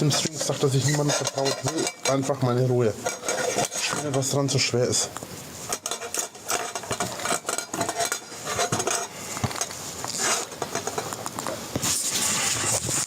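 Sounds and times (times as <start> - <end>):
objects clattering and clicking: 0.0 - 4.4, 5.2 - 13.0
rustling: 5.3 - 13.0.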